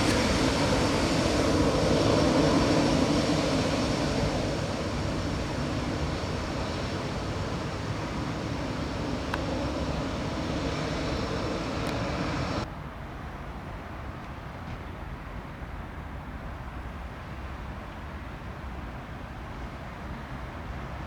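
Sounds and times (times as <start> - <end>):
jet engines rumbling: 0.0 - 12.7.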